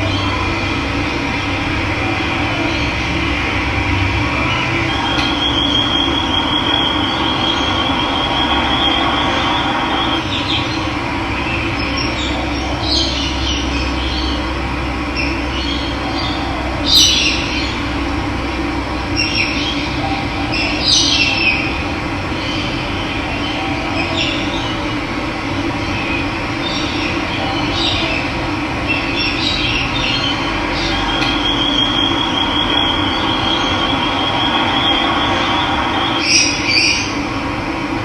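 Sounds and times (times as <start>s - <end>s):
bird trilling: 4.3s - 10.8s, 29.1s - 37.2s
sharp bird calls: 29.0s - 37.2s.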